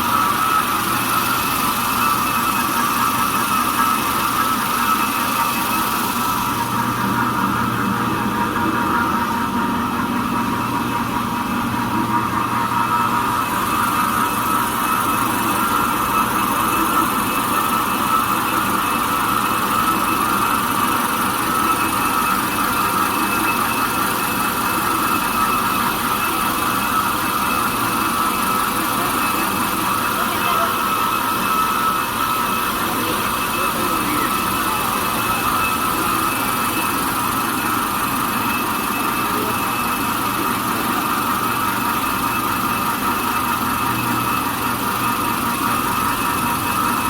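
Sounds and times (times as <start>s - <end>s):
machine drone with high whine: 0.0s - 47.0s.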